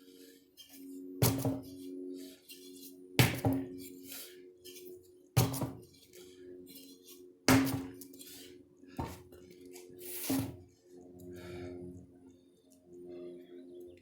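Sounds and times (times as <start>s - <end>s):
background music: 0.0s - 14.0s
sledgehammer striking: 3.2s - 3.7s, 7.5s - 8.0s.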